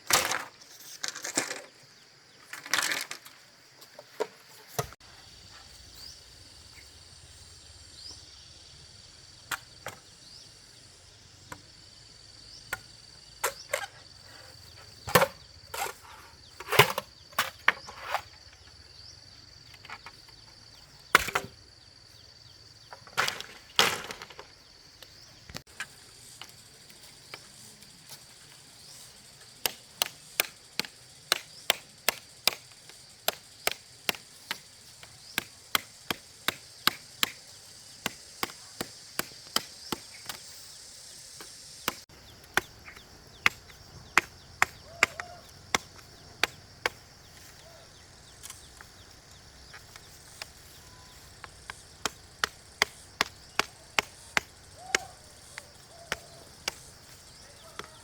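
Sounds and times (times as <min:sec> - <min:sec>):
blade chopping bamboo: 0:29.6 - 0:40.5, 0:41.4 - 0:47.4, 0:49.8 - 0:58.0.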